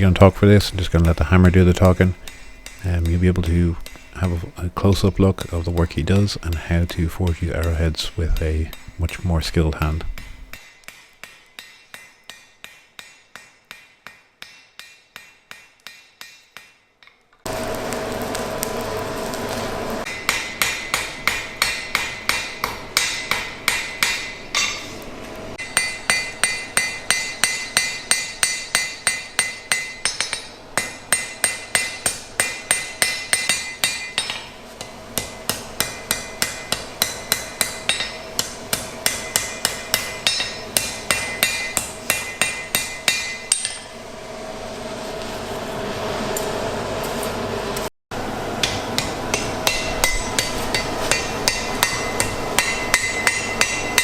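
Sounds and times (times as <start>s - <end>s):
hammer ringing on an anvil: 2.2s - 4.3s, 10.2s - 17.2s, 20.1s - 25.0s, 25.6s - 44.0s, 48.6s - 54.0s.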